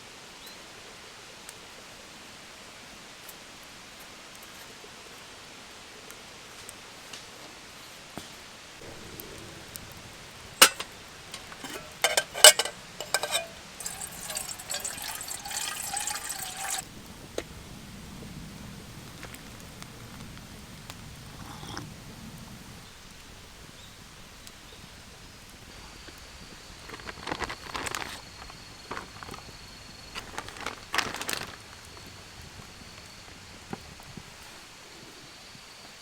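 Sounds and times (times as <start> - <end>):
liquid pouring into vessel: 8.8 - 16.8
sharp clinks and knocks: 8.8 - 16.8.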